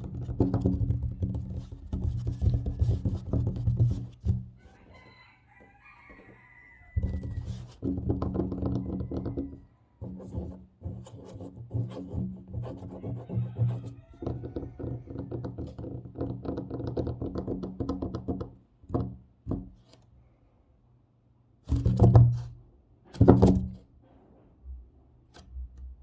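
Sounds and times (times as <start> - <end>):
fingertips tapping on tabletop: 0.0 - 4.5.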